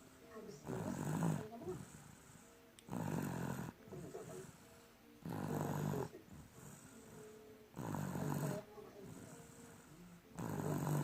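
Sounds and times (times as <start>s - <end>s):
person snoring: 0.6s - 2.0s, 2.9s - 4.6s, 5.2s - 11.0s.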